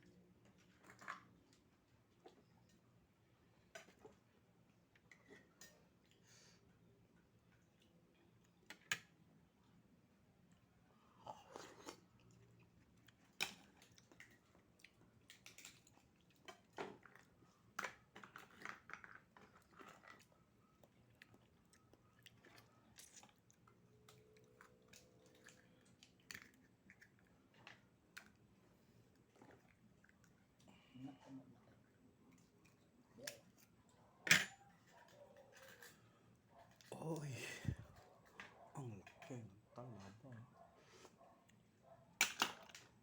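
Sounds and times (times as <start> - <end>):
chewing and biting: 18.6 - 28.4.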